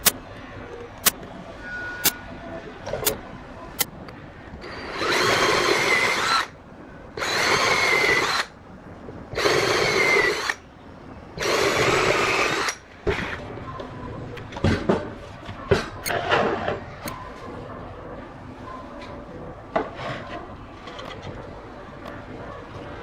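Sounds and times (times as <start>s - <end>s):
electric drill whine: 9.4s - 10.6s.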